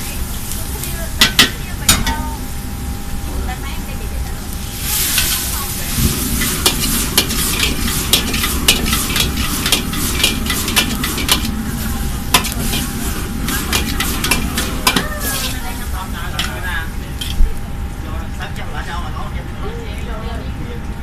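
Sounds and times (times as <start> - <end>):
food sizzling in a hot pan: 4.2 - 17.8
spatula clacking and scraping pan: 6.4 - 15.6.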